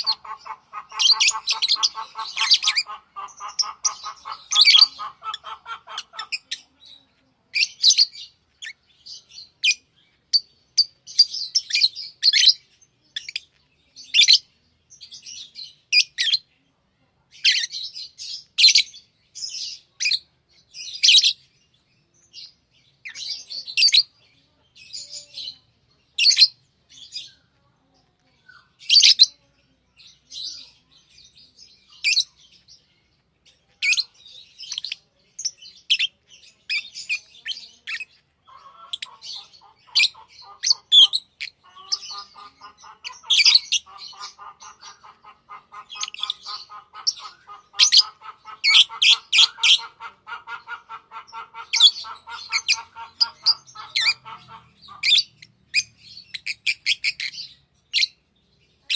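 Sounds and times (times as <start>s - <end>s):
buzzy bird chatter: 0.0s - 12.6s, 33.8s - 58.2s
lovebirds chirping: 0.0s - 16.6s, 17.3s - 58.9s.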